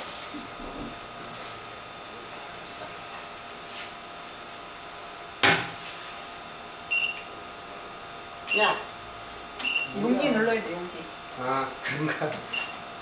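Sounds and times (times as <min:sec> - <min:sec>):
sharp knock on hard surface: 0:05.4 - 0:05.8.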